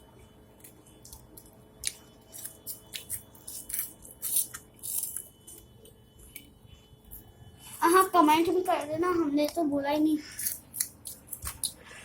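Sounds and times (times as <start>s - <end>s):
crunchy food chewing: 0.5s - 6.5s.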